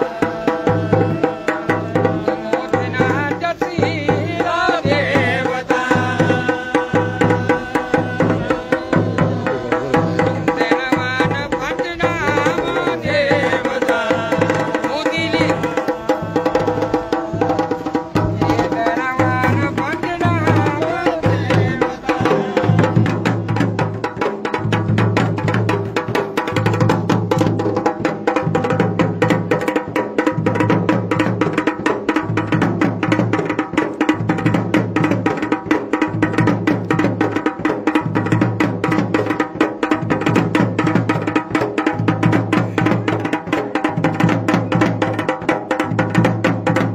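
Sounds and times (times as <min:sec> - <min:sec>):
wavering vocal-like melody: 0:00.0 - 0:23.7
drums playing fast rhythm: 0:00.0 - 0:46.9.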